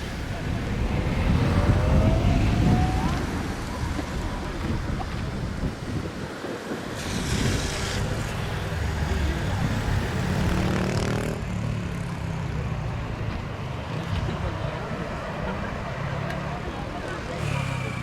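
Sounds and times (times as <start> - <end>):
jet engines rumbling: 0.0 - 10.6.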